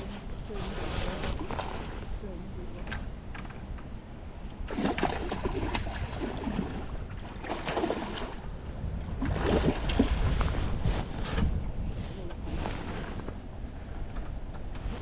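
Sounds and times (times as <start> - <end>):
wind rumbling on microphone: 0.0 - 15.0
river water flowing: 4.6 - 10.1
water splashing: 4.6 - 10.6.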